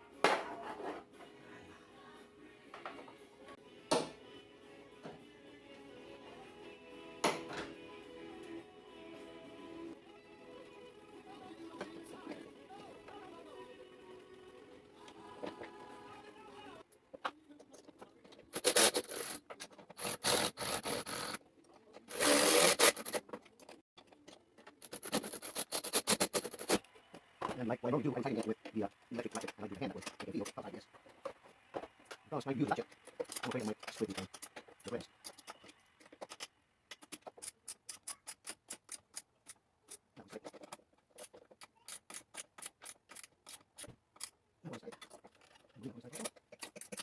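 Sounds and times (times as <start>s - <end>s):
plastic parts scraping: 17.1s - 47.0s
hand ratchet clicking: 22.1s - 23.2s, 32.8s - 44.4s.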